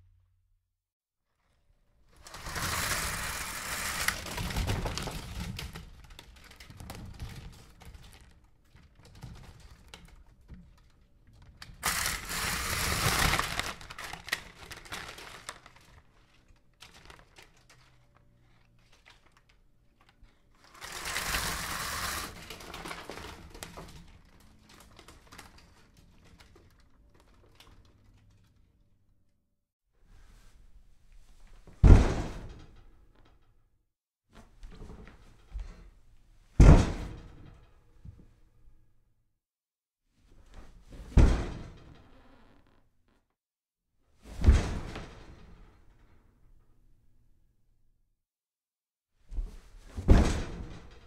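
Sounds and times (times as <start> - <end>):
window blinds rattling: 2.2 - 8.3, 11.6 - 18.1, 20.6 - 24.3.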